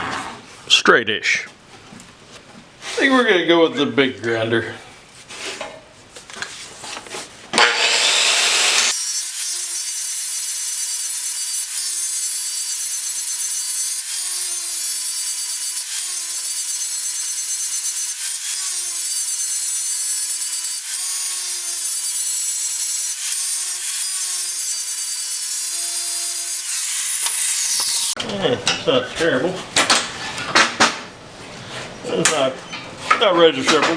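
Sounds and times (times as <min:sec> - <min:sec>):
angle grinder grinding steel: 0:07.6 - 0:28.2.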